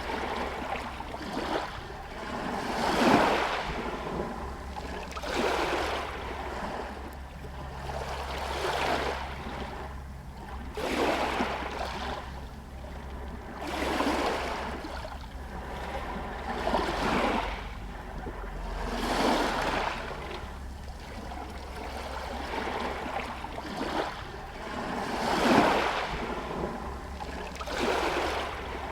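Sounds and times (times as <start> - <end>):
steady low rumble: 11.5 - 28.9
waves washing against stones: 21.9 - 26.9.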